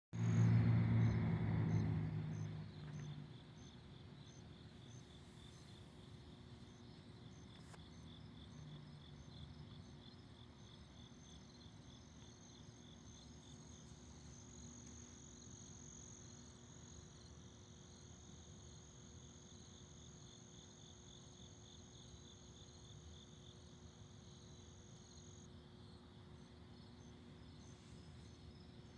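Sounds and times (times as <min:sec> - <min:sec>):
crickets chirping: 0:00.2 - 0:28.9.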